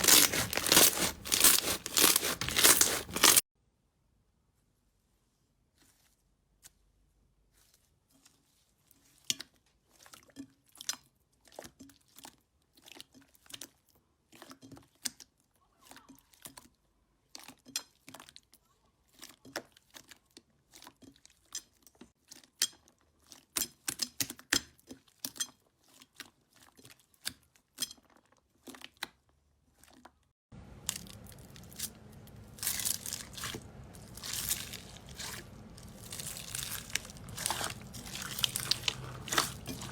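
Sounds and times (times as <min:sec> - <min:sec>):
slime crackling and popping: 0:00.0 - 0:03.4, 0:30.8 - 0:39.9.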